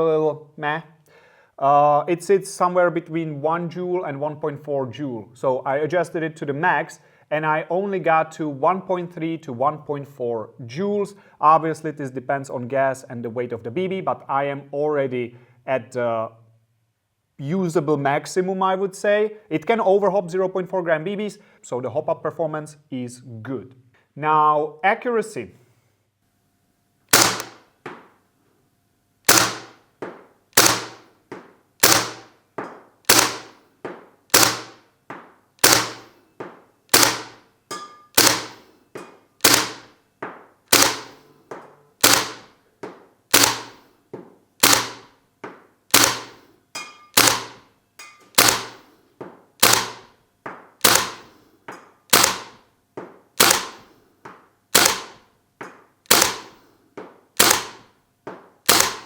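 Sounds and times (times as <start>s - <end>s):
airsoft rifle single shots: 27.1s - 27.6s, 29.3s - 29.8s, 30.6s - 31.0s, 31.8s - 32.3s, 33.1s - 33.6s, 34.3s - 34.8s, 35.6s - 36.1s, 36.9s - 37.4s, 38.2s - 38.6s, 39.4s - 39.9s, 43.3s - 43.8s, 44.6s - 45.1s, 45.9s - 46.3s, 47.2s - 47.6s, 48.4s - 48.8s, 49.6s - 50.1s, 52.1s - 52.6s, 53.4s - 53.8s, 56.1s - 56.5s, 57.4s - 57.8s, 58.7s - 59.0s
bolt cycling: 27.1s - 27.6s, 29.3s - 29.8s, 30.6s - 31.0s, 31.8s - 32.3s, 33.1s - 33.5s, 34.3s - 34.8s, 35.6s - 36.1s, 36.9s - 37.4s, 38.1s - 38.6s, 39.4s - 39.9s, 40.7s - 41.1s, 42.0s - 42.5s, 43.3s - 43.8s, 44.6s - 45.0s, 45.9s - 48.8s, 49.6s - 50.0s, 50.8s - 51.3s, 52.1s - 52.5s, 53.4s - 53.8s, 54.7s - 55.2s, 56.1s - 56.5s, 57.4s - 57.8s, 58.6s - 59.0s.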